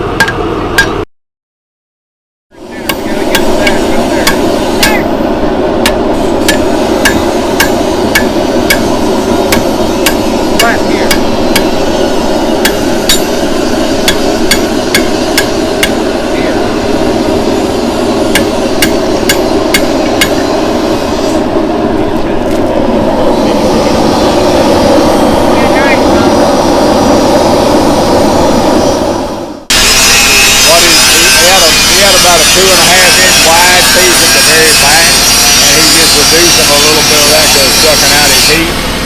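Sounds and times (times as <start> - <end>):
hammer ringing on anvil: 0.2 - 1.0, 2.8 - 20.7
steady rushing noise: 2.5 - 39.0.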